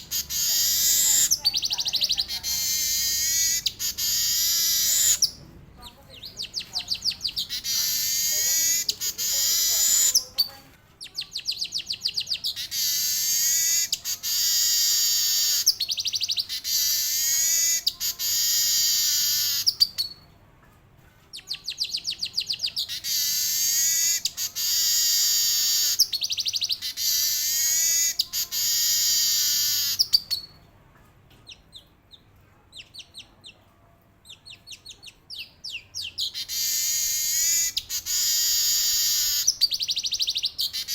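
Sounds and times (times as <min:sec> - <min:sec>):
weaver bird buzzy trills: 0:00.0 - 0:05.4, 0:06.5 - 0:10.4, 0:11.5 - 0:20.1, 0:21.6 - 0:30.5, 0:36.0 - 0:40.9.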